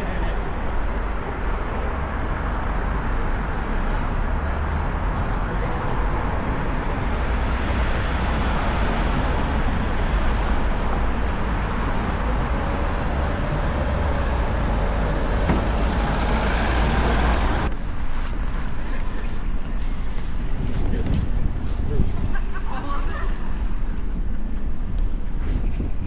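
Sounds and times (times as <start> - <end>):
vehicles passing: 0.0 - 18.8
scattered knocks: 15.0 - 17.7.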